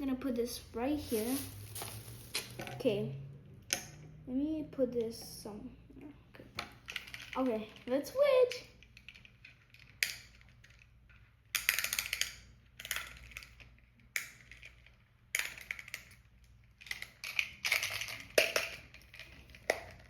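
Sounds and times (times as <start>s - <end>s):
packaging rustling and crackling: 1.0s - 2.7s.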